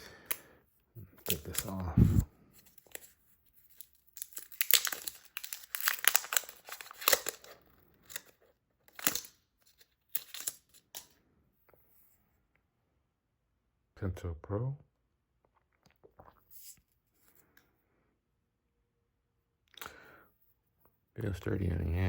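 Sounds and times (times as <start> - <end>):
packaging tearing and crinkling: 1.2 - 3.1, 3.7 - 11.1.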